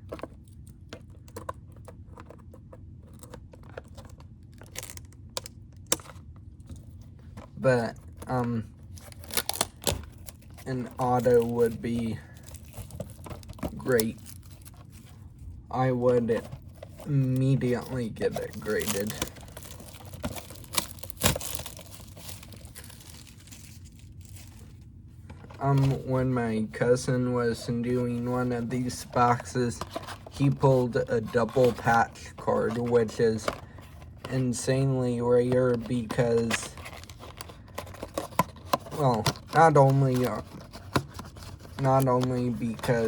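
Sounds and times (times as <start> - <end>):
cards clicking and rustling: 0.0 - 43.0
wrapper crinkling or tearing: 8.9 - 15.1, 16.3 - 24.8, 35.7 - 43.0.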